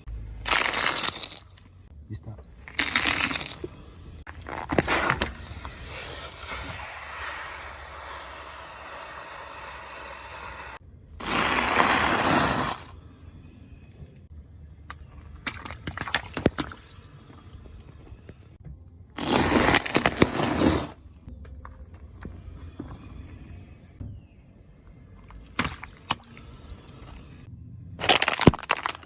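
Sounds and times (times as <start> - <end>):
car tyre crushing objects: 0.4 - 1.6, 2.7 - 13.0, 19.2 - 21.0, 25.3 - 27.3, 28.0 - 29.0
sharp cracks: 2.7 - 3.7, 28.0 - 29.0.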